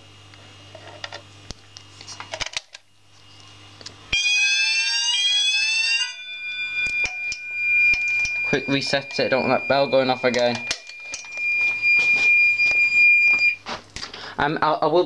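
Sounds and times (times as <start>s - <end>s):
fire alarm tone rising: 4.1s - 13.6s
steady high alarm tone: 4.1s - 13.6s.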